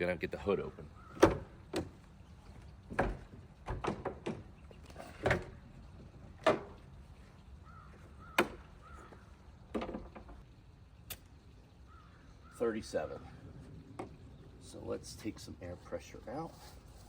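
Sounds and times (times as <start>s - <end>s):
metal hood latch clicks and clunks: 1.1s - 2.0s, 2.9s - 5.6s, 6.4s - 6.8s.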